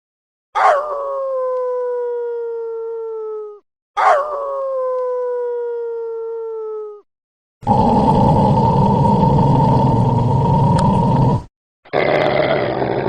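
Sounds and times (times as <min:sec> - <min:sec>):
dog howling: 0:00.6 - 0:03.4, 0:04.0 - 0:05.5
dog growling: 0:07.6 - 0:13.0.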